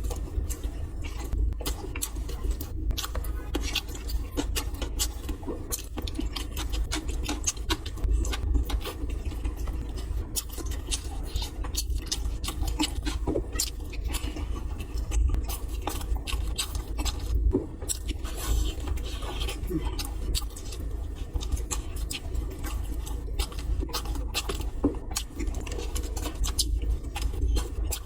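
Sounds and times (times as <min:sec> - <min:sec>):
low steady rumble: 0:00.0 - 0:28.0
wet chewing mouth clicks: 0:00.0 - 0:28.0.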